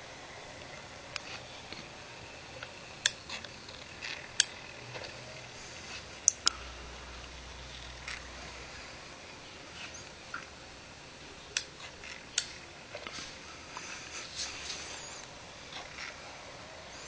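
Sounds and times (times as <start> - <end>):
small mechanism clicking: 2.6 - 5.0, 11.5 - 12.6.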